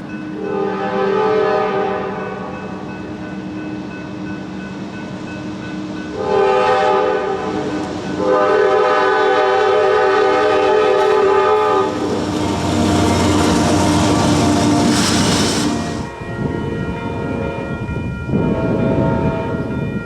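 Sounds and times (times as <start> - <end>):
low train hum: 0.0 - 20.0
locomotive horn blasts: 0.4 - 2.4, 6.1 - 15.0.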